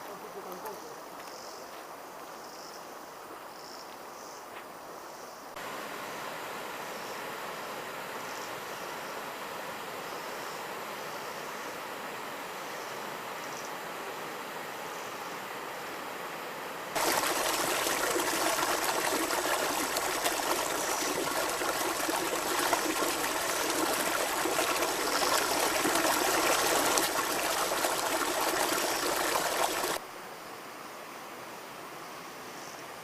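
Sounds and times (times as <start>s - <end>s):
waterfall rushing: 17.0s - 30.0s.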